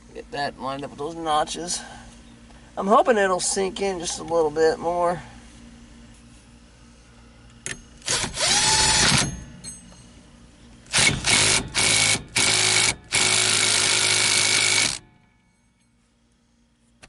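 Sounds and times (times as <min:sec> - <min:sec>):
power drill driving bolts: 0:08.0 - 0:09.4, 0:10.9 - 0:15.0.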